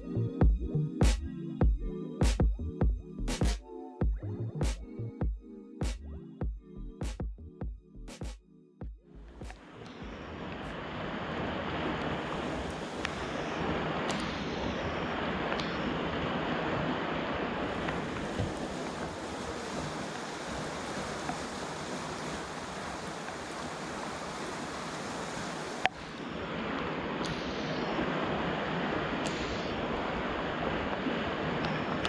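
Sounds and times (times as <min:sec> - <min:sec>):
water rushing over spillway: 0:10.6 - 0:32.0.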